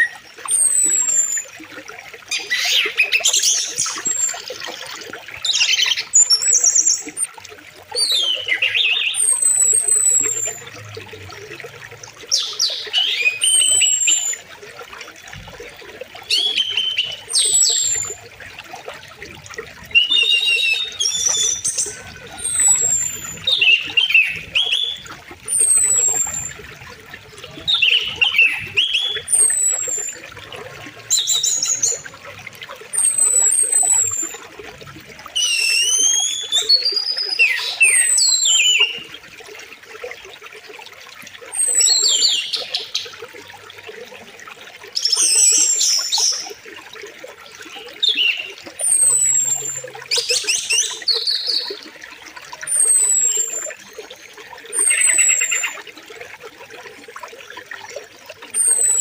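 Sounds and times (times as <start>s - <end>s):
songbirds chirping and whistling: 0.0s - 1.5s, 2.3s - 7.3s, 7.9s - 10.9s, 12.3s - 14.5s, 16.2s - 18.2s, 19.7s - 32.2s, 32.8s - 34.5s, 35.3s - 39.1s, 41.5s - 43.1s, 47.6s - 51.8s, 52.6s - 53.9s, 54.7s - 55.8s, 58.4s - 59.0s
faint rush of water: 0.0s - 59.0s.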